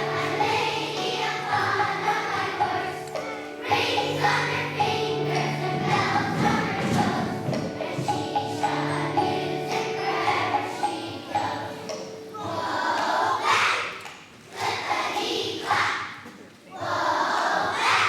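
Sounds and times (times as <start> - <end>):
music with a steady beat: 0.0 - 12.7
children's choir singing: 0.0 - 18.0.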